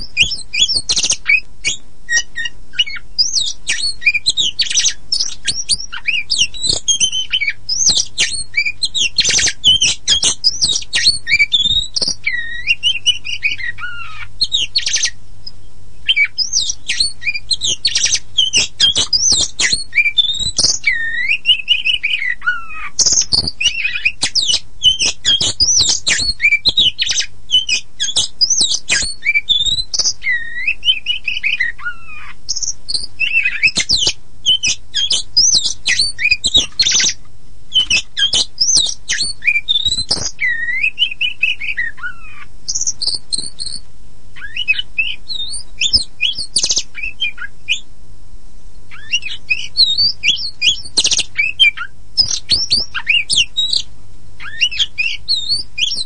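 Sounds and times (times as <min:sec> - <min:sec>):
bird singing chirps and whistles: 0:00.0 - 0:43.8, 0:44.4 - 0:47.9, 0:48.9 - 0:56.0.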